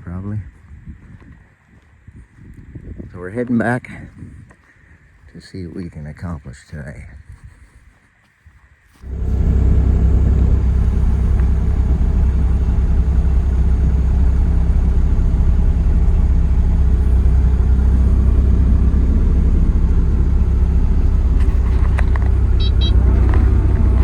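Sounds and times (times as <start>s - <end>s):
diesel engine rumbling steadily: 9.0s - 24.0s.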